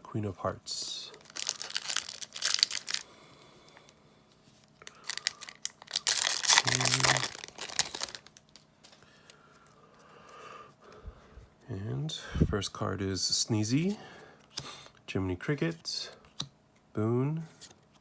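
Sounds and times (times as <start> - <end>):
foil wrapper crinkling and tearing: 1.2 - 3.1, 4.7 - 9.0.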